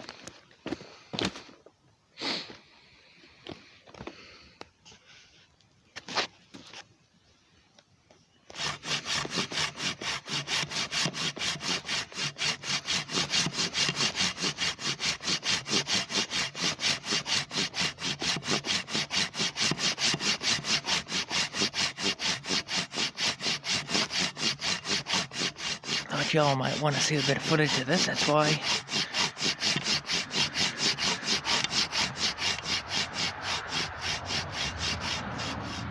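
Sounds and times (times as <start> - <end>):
hand saw sawing log: 8.5 - 35.9.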